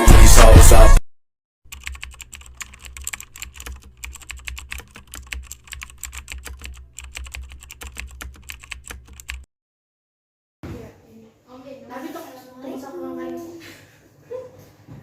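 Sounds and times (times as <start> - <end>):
rapid typing on keyboard: 1.7 - 9.5.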